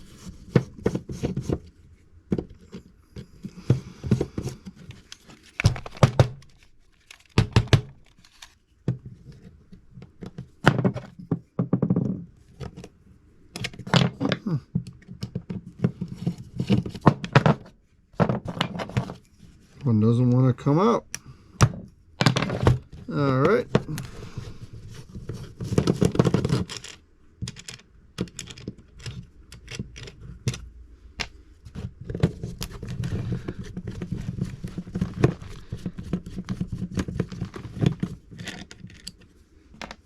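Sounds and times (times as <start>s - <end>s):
clicks and knocks of plastic case: 2.3s - 12.9s, 13.6s - 19.2s, 21.6s - 39.1s, 39.8s - 40.0s
screwdriver scraping on plastic: 31.7s - 40.0s.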